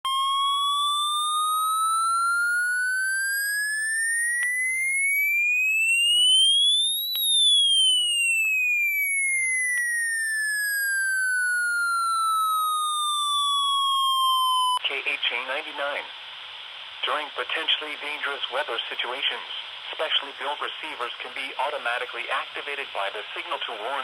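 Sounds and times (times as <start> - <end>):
electronic alert tone rising and falling: 0.0 - 14.8.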